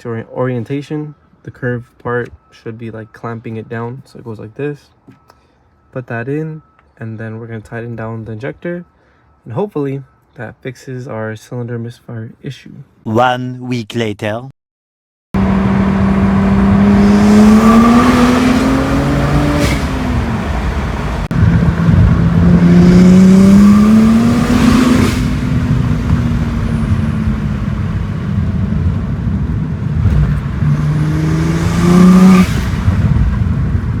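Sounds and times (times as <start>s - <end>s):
car engine accelerating hard: 15.4s - 34.0s.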